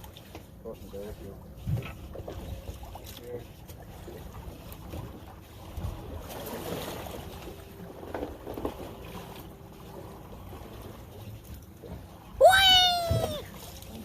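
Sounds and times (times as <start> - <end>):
water noise around boat: 0.0 - 14.0
wind: 0.0 - 14.0.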